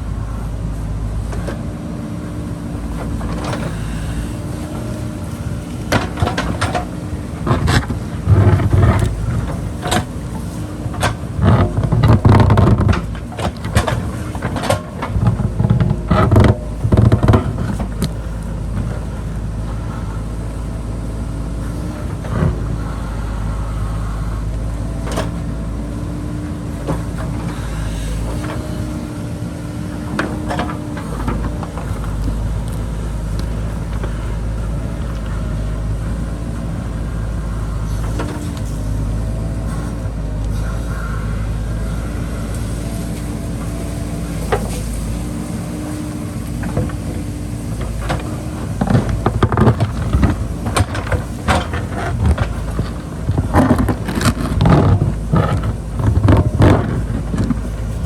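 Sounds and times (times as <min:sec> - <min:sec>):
diesel engine running: 0:00.0 - 0:58.0
bucket digging and scraping rock: 0:06.0 - 0:18.2, 0:44.5 - 0:58.0.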